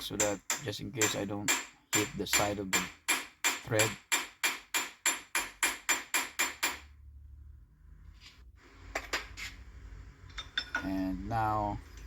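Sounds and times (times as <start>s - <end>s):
hammer striking steel punch: 0.0s - 6.8s.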